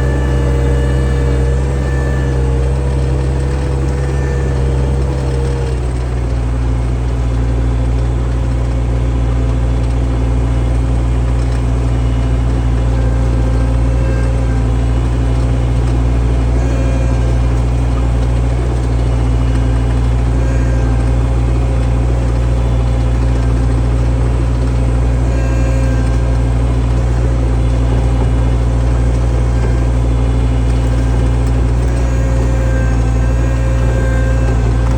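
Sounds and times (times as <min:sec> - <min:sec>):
skid steer engine droning: 0:00.0 - 0:34.9.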